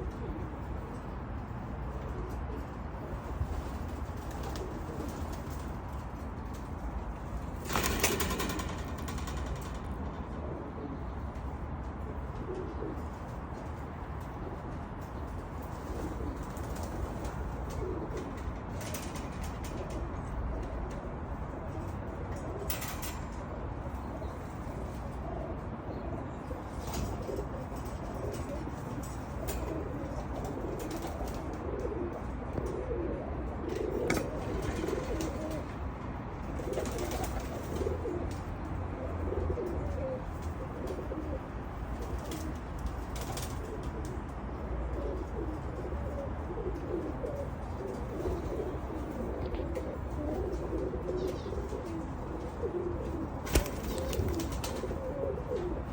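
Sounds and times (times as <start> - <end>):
pigeons cooing: 0.0 - 55.9
wing flutters: 7.6 - 10.0, 53.1 - 55.7.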